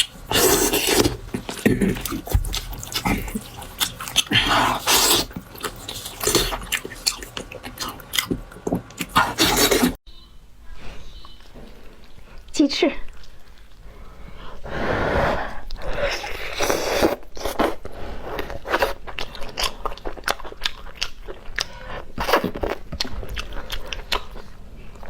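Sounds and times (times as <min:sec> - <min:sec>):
person chewing crisp food: 0:00.0 - 0:10.0, 0:15.7 - 0:25.0.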